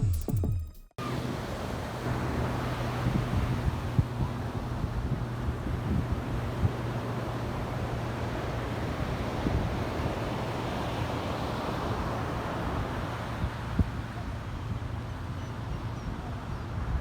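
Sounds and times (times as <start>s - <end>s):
wind rushing over microphone: 1.0s - 17.0s.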